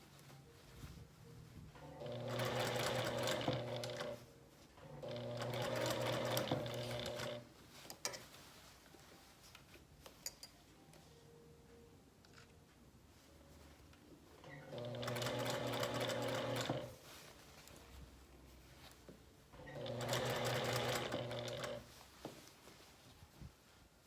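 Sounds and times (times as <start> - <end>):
sewing machine running: 1.9 - 4.2, 5.0 - 7.4, 14.6 - 16.9, 19.6 - 21.8.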